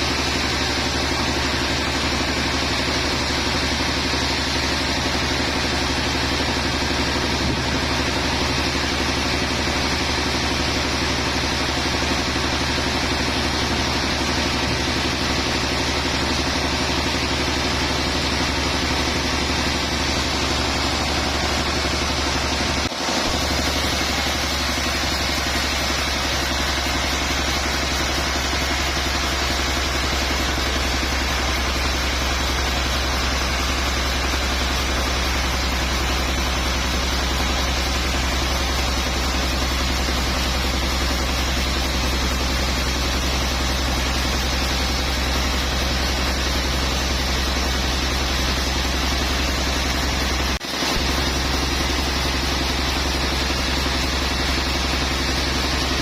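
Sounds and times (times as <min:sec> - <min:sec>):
sawmill machinery humming: 0:00.0 - 0:56.0.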